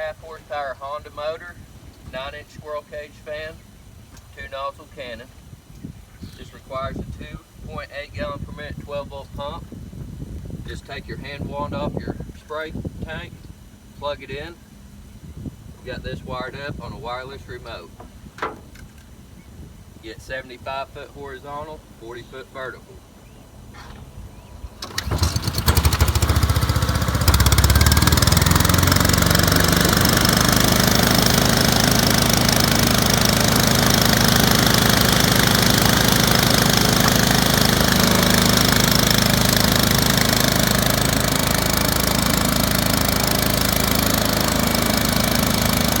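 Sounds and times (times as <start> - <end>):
fan rush of air: 0.0 - 46.0
small engine starting and running: 24.8 - 46.0.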